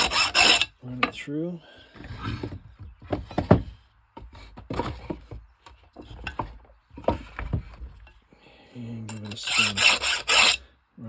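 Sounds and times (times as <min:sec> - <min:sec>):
file rasping on chainsaw chain: 0:00.0 - 0:00.8, 0:09.1 - 0:10.7.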